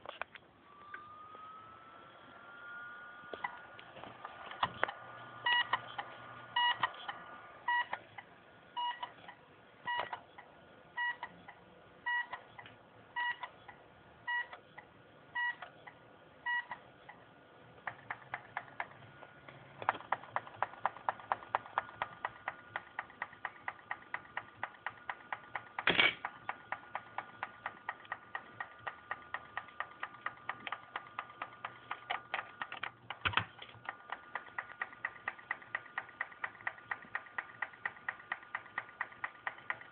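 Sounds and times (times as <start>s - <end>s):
faint steady whine: 0.0s - 20.2s
hard drive clicking: 3.3s - 8.0s, 17.8s - 39.9s.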